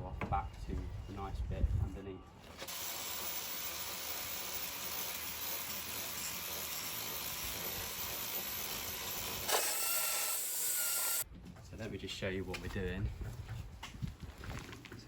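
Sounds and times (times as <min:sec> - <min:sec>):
angle grinder grinding metal: 0:02.6 - 0:11.2.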